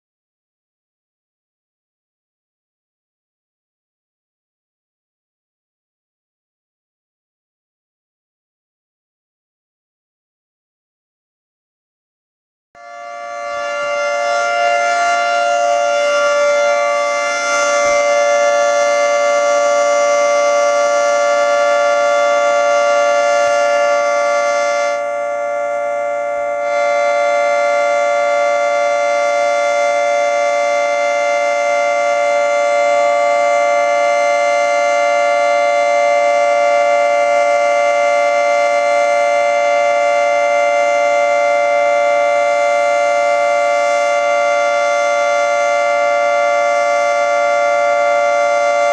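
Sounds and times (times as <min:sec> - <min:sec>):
two-tone warning siren: 0:12.8 - 0:48.9.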